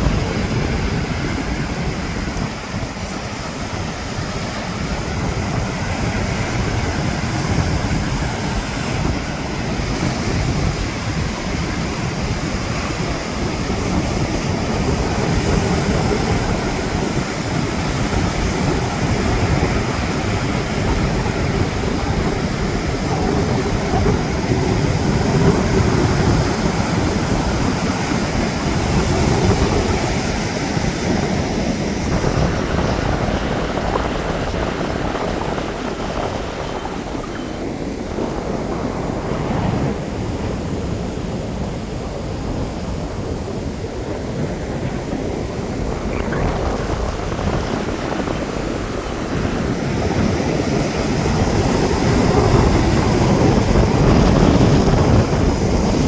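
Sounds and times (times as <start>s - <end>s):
ocean surf washing: 0.0s - 56.0s
wind buffeting microphone: 0.0s - 56.0s.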